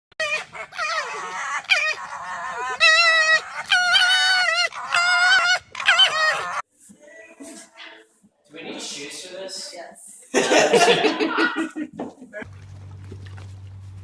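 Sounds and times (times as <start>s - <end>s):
animal calling loudly: 0.2s - 6.6s.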